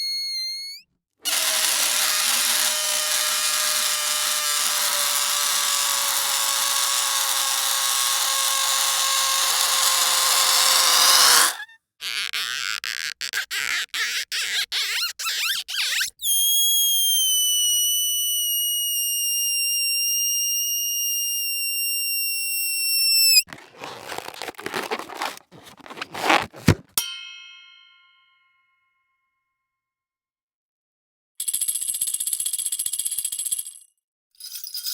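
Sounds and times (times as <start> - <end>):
high cartoon whistle: 0.0 - 0.8, 14.1 - 23.5
scratchy strokes: 23.5 - 27.0
bright ding: 27.0 - 28.5.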